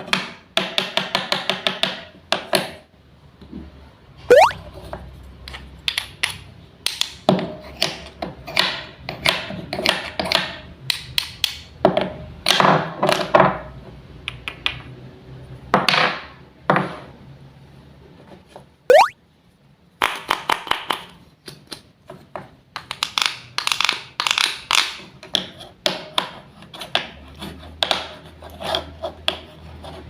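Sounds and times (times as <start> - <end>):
wooden toy pieces clacking: 22.8 - 27.0.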